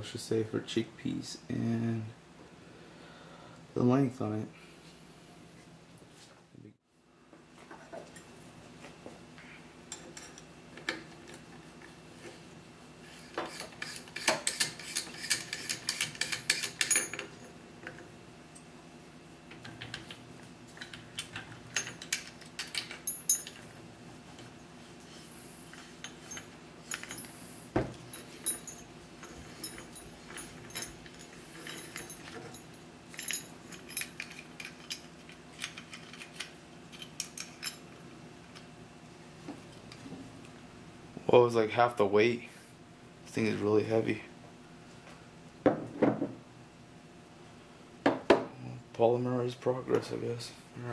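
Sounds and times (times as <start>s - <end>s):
faint steady hum: 0.0s - 50.9s
metal parts clicking and clinking: 13.4s - 18.0s, 20.8s - 23.7s, 25.7s - 27.4s, 28.1s - 37.8s.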